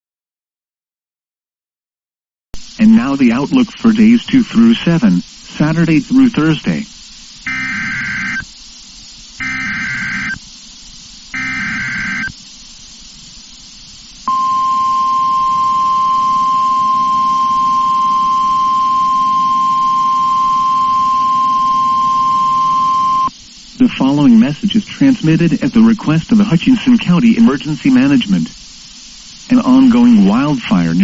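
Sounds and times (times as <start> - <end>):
digital data bursts: 2.8 - 12.8, 13.6 - 28.6, 29.3 - 31.0
steady warning alarm tone: 7.4 - 8.5, 9.4 - 10.5, 11.3 - 12.4, 14.3 - 23.3.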